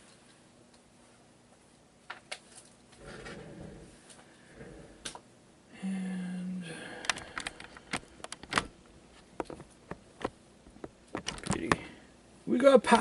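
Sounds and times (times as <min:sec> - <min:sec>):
equipment and cables clicking: 0:07.0 - 0:11.9.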